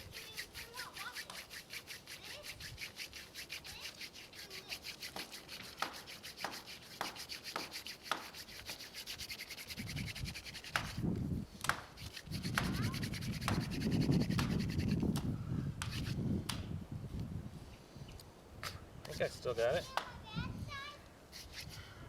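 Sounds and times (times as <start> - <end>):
wood-on-wood rubbing: 0.0 - 11.0, 11.6 - 15.2, 21.3 - 21.8
sharp wooden knocks: 5.1 - 8.3, 11.6 - 12.8, 13.4 - 13.7, 14.3 - 14.6.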